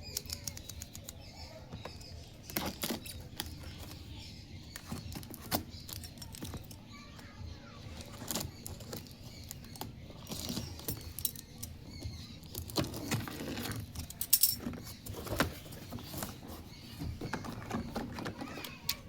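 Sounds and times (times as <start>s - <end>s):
plastic toy pieces clicking: 0.0s - 1.3s, 4.8s - 6.8s, 8.0s - 16.3s
rustling: 7.8s - 19.0s.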